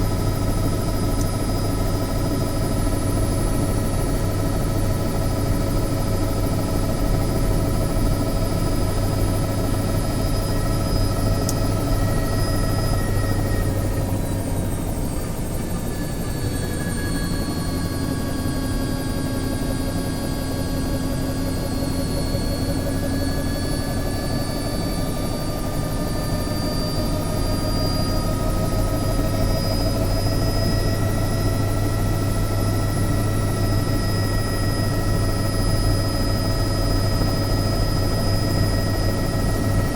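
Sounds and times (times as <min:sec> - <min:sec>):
helicopter rotor drone: 0:00.0 - 0:39.9
turbine whine: 0:00.0 - 0:39.9.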